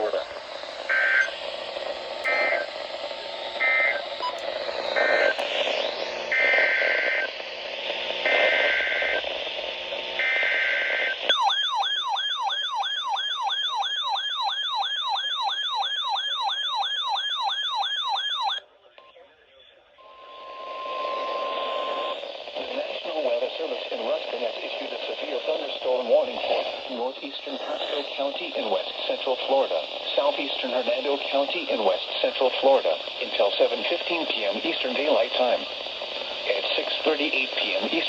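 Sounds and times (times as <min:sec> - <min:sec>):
radio hiss: 0:00.0 - 0:11.3, 0:18.8 - 0:38.0
warbling siren alert tone: 0:11.3 - 0:18.6.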